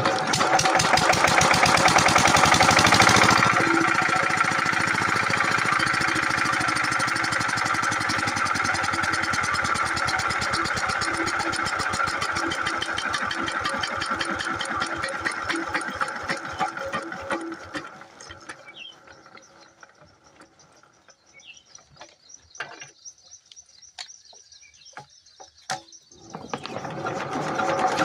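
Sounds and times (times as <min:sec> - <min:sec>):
diesel engine chugging: 0:00.0 - 0:21.8, 0:26.1 - 0:28.0
scattered clicks and knocks: 0:23.9 - 0:28.0.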